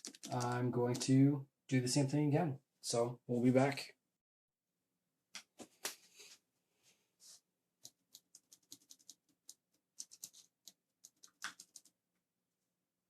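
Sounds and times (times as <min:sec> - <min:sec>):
keyboard keycaps clicking: 0:00.0 - 0:01.0, 0:07.9 - 0:11.9.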